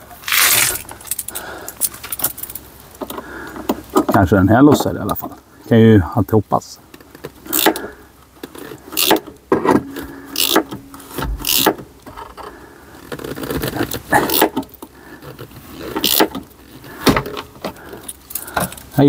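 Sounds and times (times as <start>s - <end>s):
hand tools clicking and clattering: 8.5s - 11.8s.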